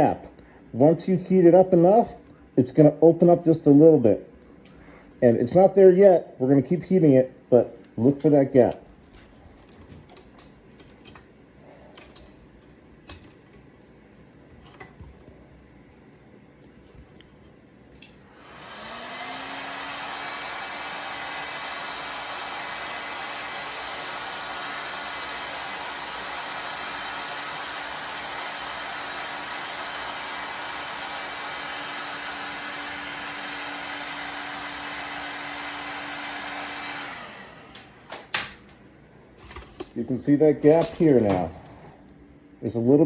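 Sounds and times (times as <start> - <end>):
heat gun fan humming: 17.9 - 43.0.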